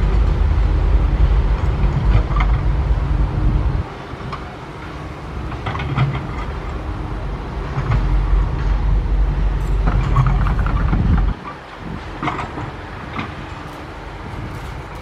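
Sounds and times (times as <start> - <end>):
excavator diesel engine under load: 0.0 - 15.0
machine knocks and scrapes: 7.6 - 9.0.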